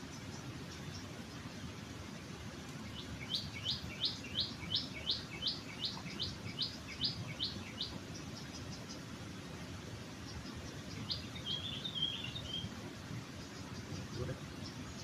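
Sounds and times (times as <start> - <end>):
low background rush: 0.0 - 15.0
small bird chirping: 2.8 - 9.1, 10.2 - 15.0.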